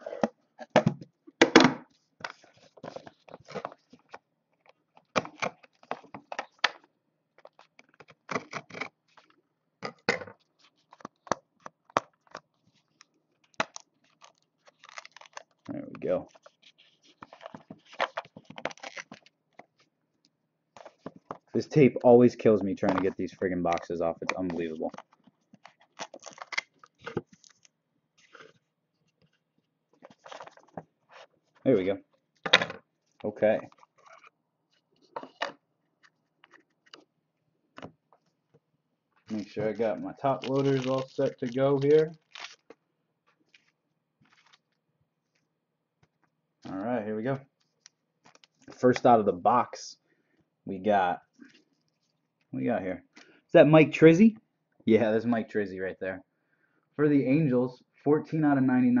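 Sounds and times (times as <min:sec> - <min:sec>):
packing tape scraping and tearing: 0:07.8 - 0:09.0, 0:16.4 - 0:19.3, 0:40.2 - 0:42.8
packing tape peeling off cardboard: 0:40.2 - 0:42.7.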